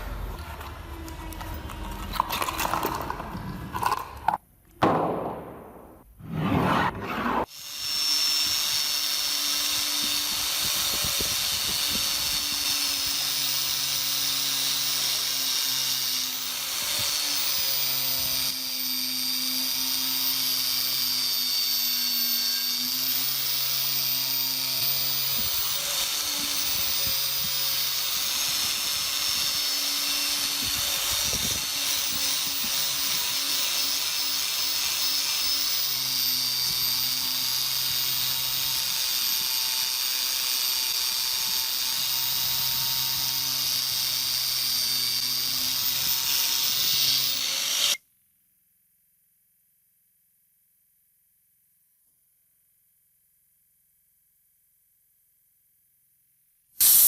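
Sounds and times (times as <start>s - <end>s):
low hum: 0.0s - 7.5s
rotary tool whining on metal: 6.3s - 48.0s.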